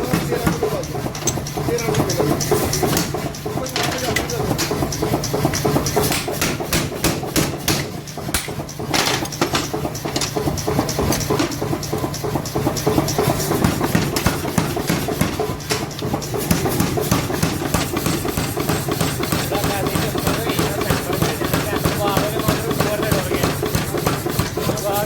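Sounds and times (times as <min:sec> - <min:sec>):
hammer strikes on metal: 0:05.9 - 0:10.3, 0:13.1 - 0:24.8.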